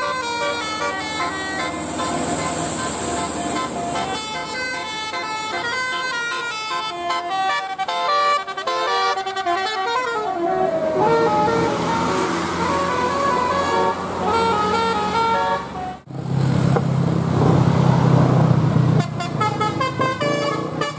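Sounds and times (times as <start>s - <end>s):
bus musical horn playing a tune: 0.0s - 16.0s, 19.0s - 20.9s.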